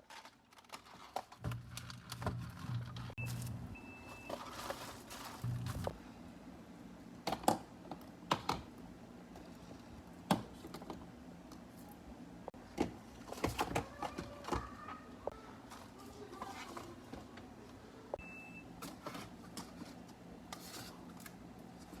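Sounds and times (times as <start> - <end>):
plastic containers clattering: 12.7 - 14.9.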